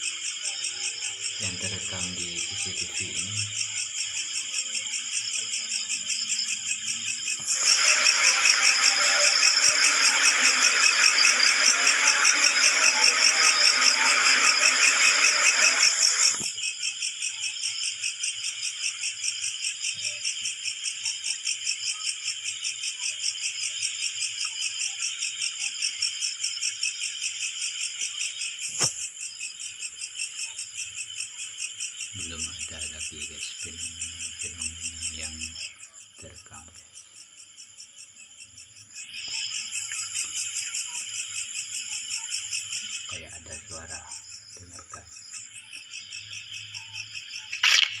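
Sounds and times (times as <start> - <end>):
insects chirping: 0.0 - 48.0
hiss: 7.4 - 16.5
sharp click: 47.6 - 48.0.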